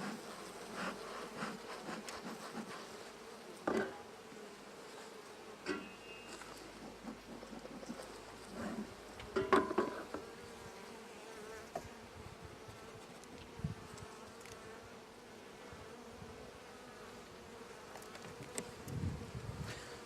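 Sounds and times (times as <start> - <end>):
honey bees buzzing: 0.0 - 20.0.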